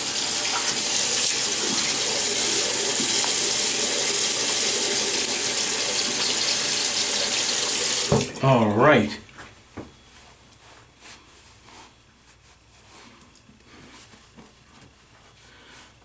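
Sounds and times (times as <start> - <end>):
tap water running into sink: 0.0 - 8.4.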